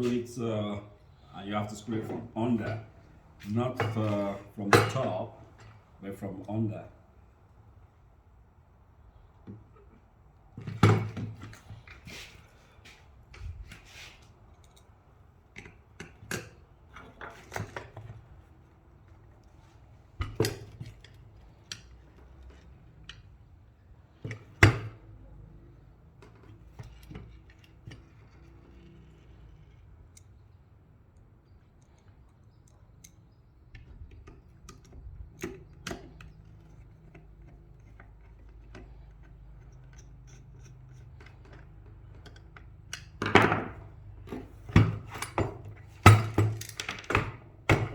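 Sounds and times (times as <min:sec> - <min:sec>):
allen key driving screw: 0:34.0 - 0:43.2.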